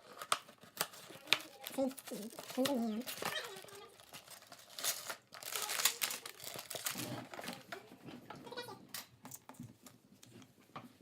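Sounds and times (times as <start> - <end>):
plastic and cardboard packaging crinkling: 0.0 - 8.7.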